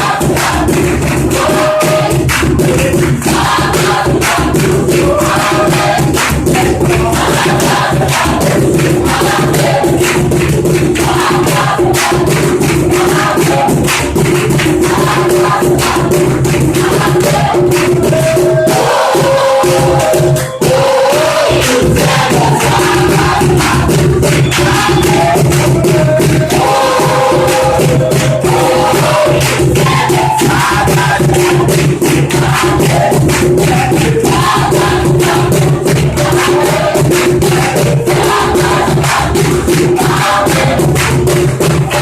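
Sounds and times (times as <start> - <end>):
church choir singing a hymn: 0.0 - 42.0
steady percussion beat: 0.0 - 42.0.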